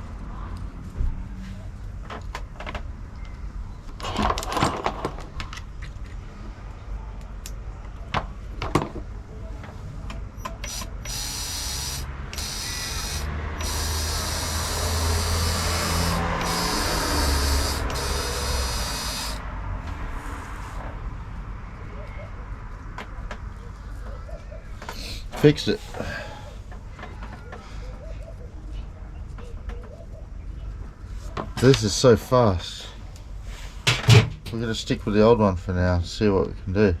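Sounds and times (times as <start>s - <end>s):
small electric motor whining: 10.6s - 19.4s.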